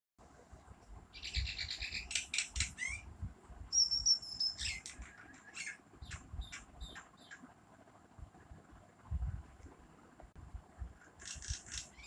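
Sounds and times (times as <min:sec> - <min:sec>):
songbirds singing and chirping: 0:01.1 - 0:07.6, 0:11.2 - 0:12.0.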